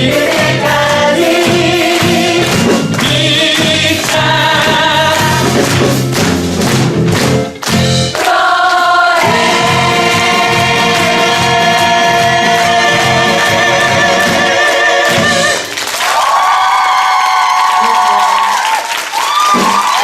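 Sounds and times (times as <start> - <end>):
vocal group singing: 0.0 - 6.0, 8.2 - 15.7.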